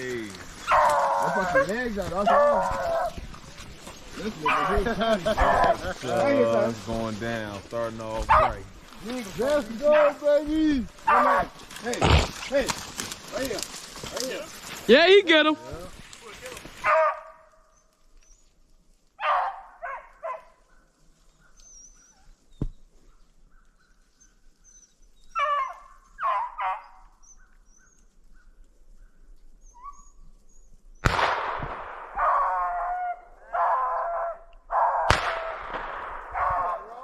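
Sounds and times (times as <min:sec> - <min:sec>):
hounds baying and barking: 0:00.1 - 0:07.1, 0:08.1 - 0:12.7, 0:16.6 - 0:17.9, 0:19.1 - 0:30.4, 0:32.0 - 0:37.0.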